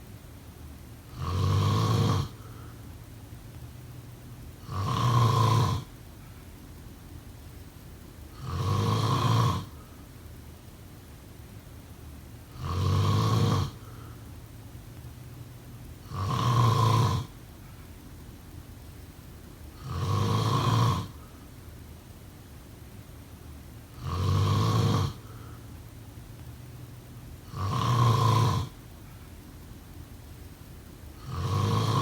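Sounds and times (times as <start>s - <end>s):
faint low hum: 0.0s - 32.0s
person snoring: 1.1s - 2.8s, 4.6s - 5.9s, 8.3s - 10.0s, 12.5s - 14.2s, 16.0s - 17.4s, 19.8s - 21.3s, 23.9s - 25.6s, 27.4s - 28.8s, 31.2s - 32.0s.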